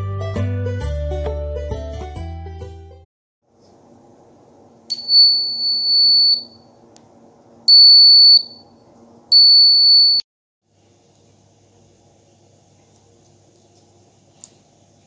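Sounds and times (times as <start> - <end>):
high-pitched alarm buzzer beeps: 4.9 - 6.6, 7.7 - 8.7, 9.3 - 10.2.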